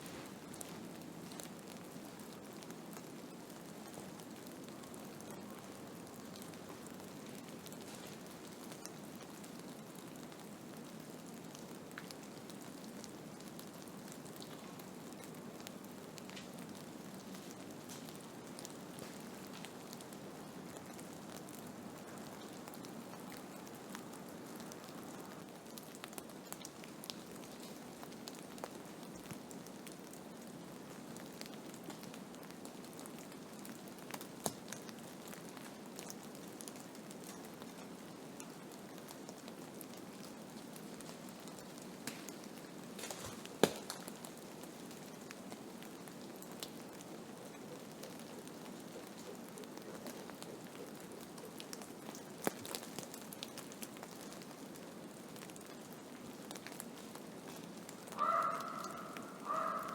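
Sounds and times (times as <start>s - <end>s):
wind-driven snow hiss: 0.0s - 0.9s.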